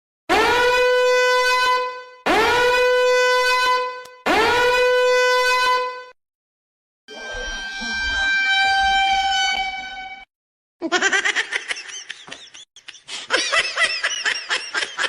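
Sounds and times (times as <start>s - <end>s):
horn-like blasts: 0.3s - 6.2s, 7.1s - 10.3s.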